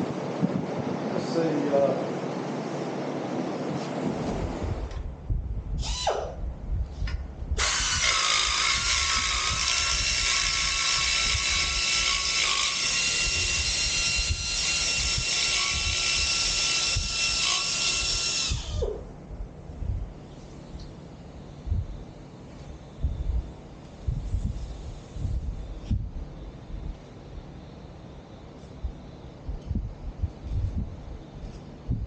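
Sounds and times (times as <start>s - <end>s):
power cutting tool whining: 7.6s - 19.0s.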